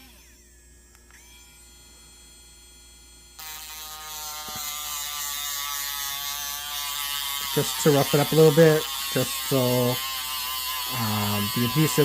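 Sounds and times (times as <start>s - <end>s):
rotary tool sanding metal: 0.0s - 0.5s, 3.4s - 12.0s.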